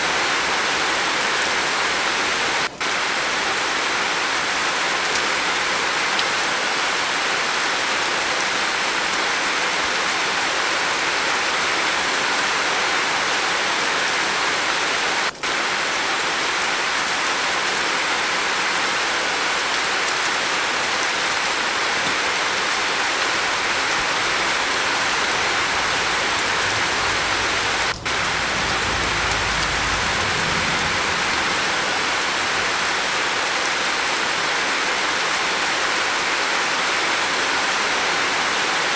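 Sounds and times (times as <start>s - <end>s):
heavy rain on a roof: 0.0s - 38.9s
low rumble: 23.3s - 33.1s.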